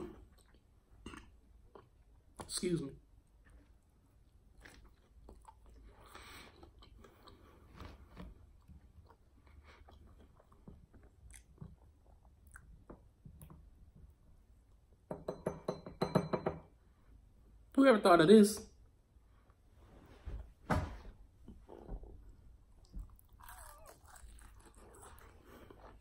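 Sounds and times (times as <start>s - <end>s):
person chewing crunchy food: 3.4s - 13.5s, 22.9s - 26.0s.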